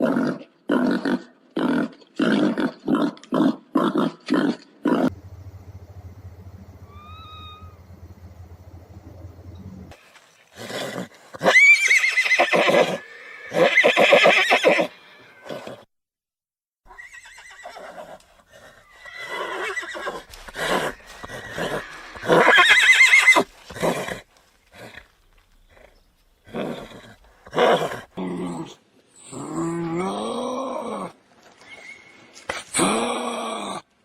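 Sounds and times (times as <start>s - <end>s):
horse neighing: 6.8s - 8.0s, 10.7s - 15.9s, 16.9s - 18.1s, 18.7s - 24.2s
horse snorting: 10.6s - 11.8s, 17.8s - 22.6s, 23.4s - 28.2s.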